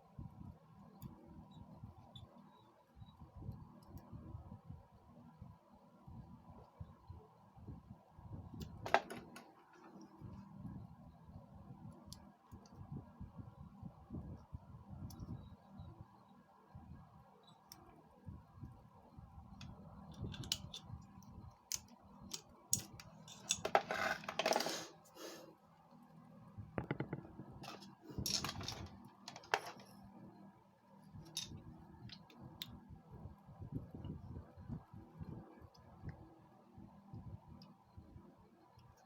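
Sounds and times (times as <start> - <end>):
clinks of small metal parts: 21.8 - 24.8, 27.6 - 29.9.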